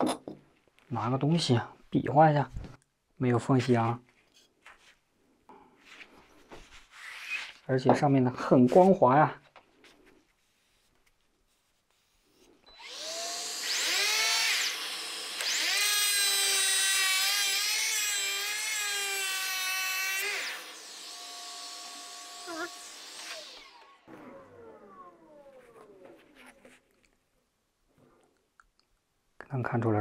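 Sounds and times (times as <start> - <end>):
electric planer motor whining: 12.7 - 26.4.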